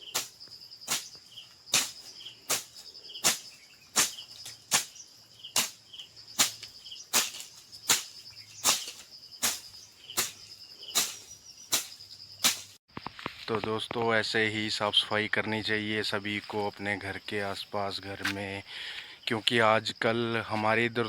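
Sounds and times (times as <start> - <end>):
sickle cutting through weeds: 0.0 - 5.8, 6.4 - 12.8
crickets chirring: 0.0 - 21.0.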